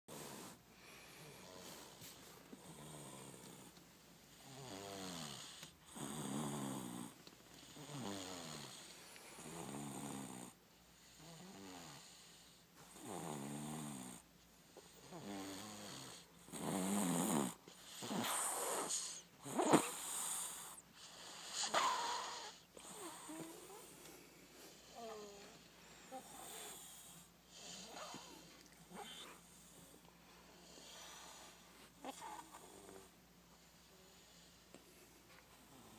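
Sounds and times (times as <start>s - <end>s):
person snoring loudly: 15.1s - 20.5s.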